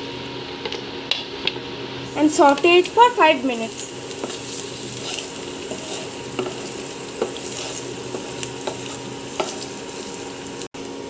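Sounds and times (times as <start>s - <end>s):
garlic sizzling in hot oil: 0.0s - 11.0s
stirring scrapes and clicks: 4.0s - 10.1s.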